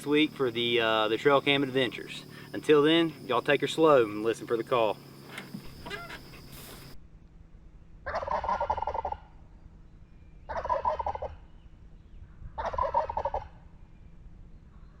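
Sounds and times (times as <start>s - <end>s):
turkey gobbling: 8.1s - 9.3s, 10.5s - 11.4s, 12.6s - 13.6s.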